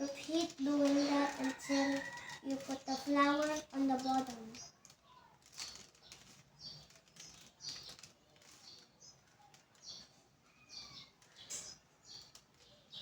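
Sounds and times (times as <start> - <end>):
puzzle cube plastic swishes and clicks: 0.0 - 10.1.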